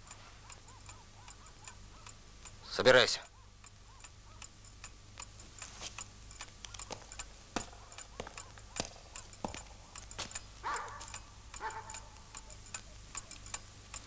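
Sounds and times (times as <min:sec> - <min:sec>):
crackle of sharp clicks: 0:03.2 - 0:14.0.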